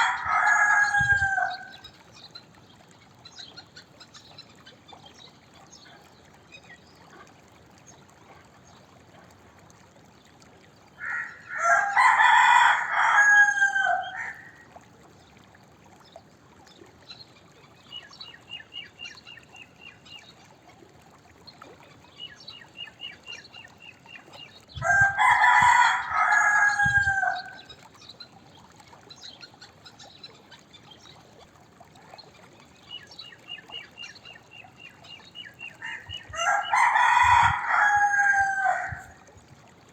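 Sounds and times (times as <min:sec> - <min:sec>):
rooster crowing: 0:00.0 - 0:01.8, 0:11.0 - 0:14.5, 0:24.8 - 0:27.6, 0:36.3 - 0:39.2
faint rapid ticking calls: 0:13.8 - 0:39.1.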